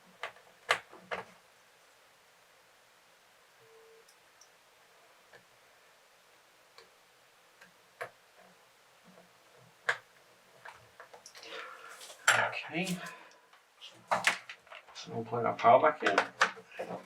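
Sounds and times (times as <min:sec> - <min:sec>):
laptop parts clicking and knocking: 0:00.1 - 0:01.4.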